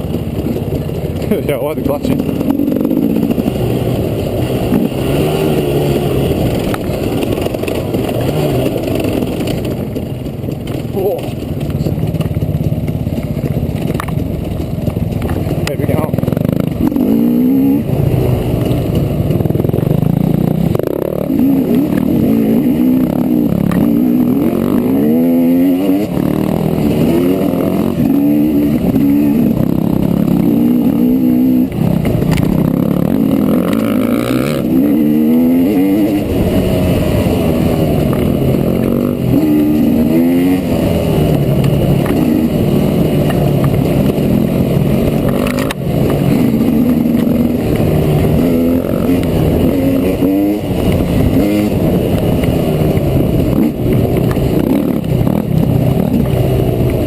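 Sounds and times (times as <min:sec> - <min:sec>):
dirt bike engine revving: 0:00.0 - 0:57.0.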